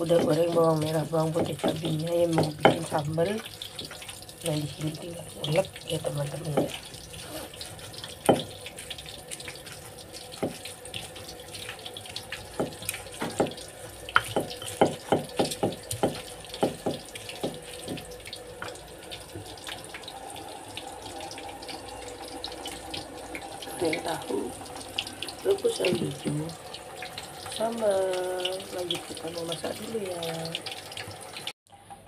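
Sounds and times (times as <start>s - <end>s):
pestle knocking in a mortar: 1.3s - 2.9s, 12.6s - 18.8s.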